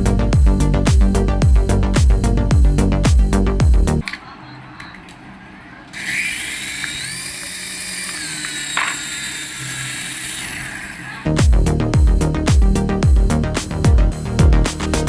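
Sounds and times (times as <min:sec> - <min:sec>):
toy electric motor whirring: 0:05.9 - 0:11.3.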